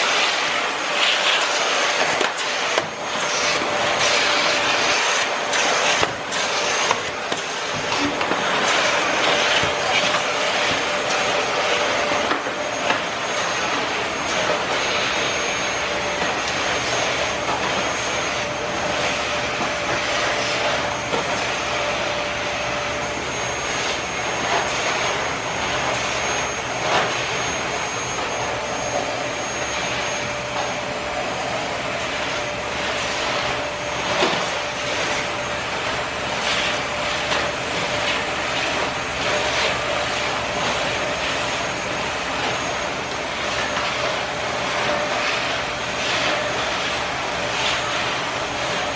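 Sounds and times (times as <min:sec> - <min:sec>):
vacuum cleaner running: 0:00.0 - 0:48.9.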